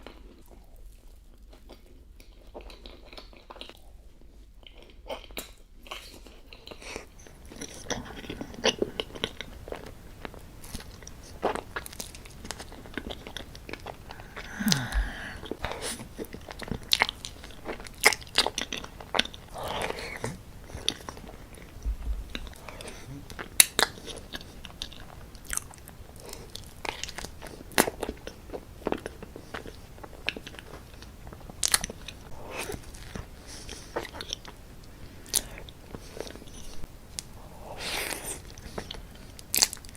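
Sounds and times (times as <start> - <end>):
person chewing: 4.6 - 36.8
mouth clicks and smacks: 7.5 - 18.8
short falling vocal sound: 14.1 - 15.6.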